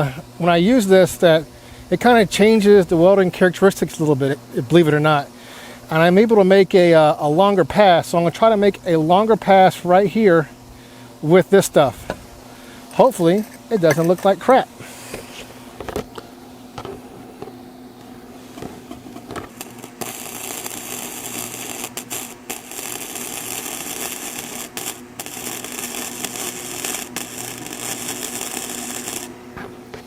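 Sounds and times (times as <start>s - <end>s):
welder humming: 0.0s - 30.0s
welding arc crackling: 18.4s - 29.6s.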